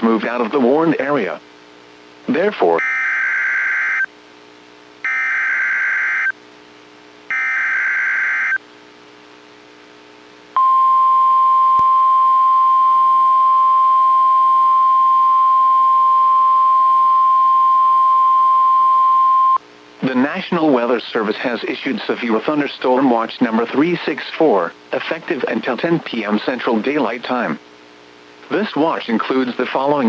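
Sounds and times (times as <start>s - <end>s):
harsh buzzy data bursts: 5.0s - 6.3s, 7.3s - 8.6s
piercing steady alert tone: 5.1s - 6.3s, 7.3s - 8.6s.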